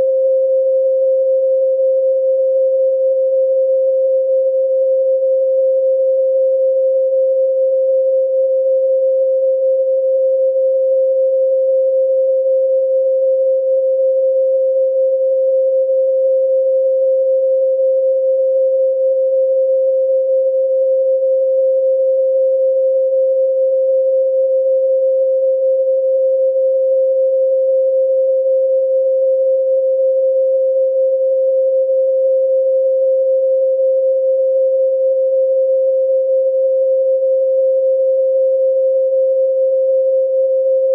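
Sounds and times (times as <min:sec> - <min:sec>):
pure sine tone: 0:00.0 - 0:40.9.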